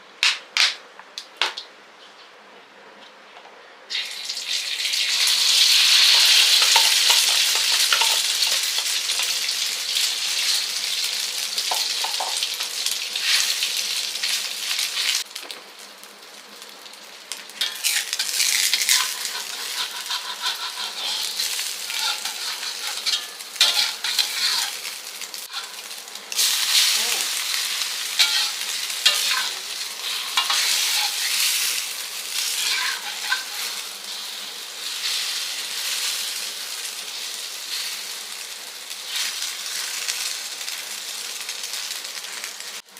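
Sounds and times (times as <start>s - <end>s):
food sizzling in a pan: 3.9s - 42.9s
scraping while stirring: 17.6s - 24.9s, 28.2s - 31.5s, 32.4s - 33.8s.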